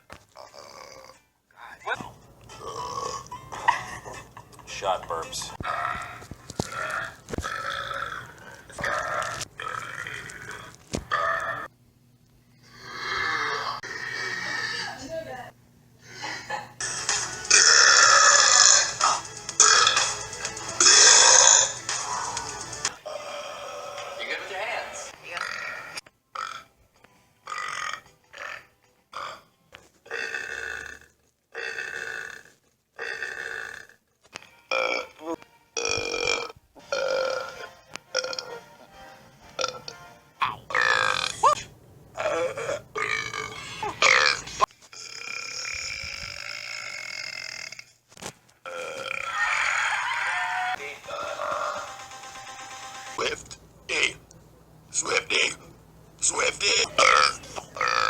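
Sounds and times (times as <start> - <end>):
man burping: 0.4 - 1.2, 2.6 - 3.4, 4.7 - 11.6, 17.5 - 20.1, 20.8 - 21.8, 30.1 - 34.0, 34.7 - 38.6, 39.6 - 47.9, 48.7 - 49.3, 56.7 - 58.0.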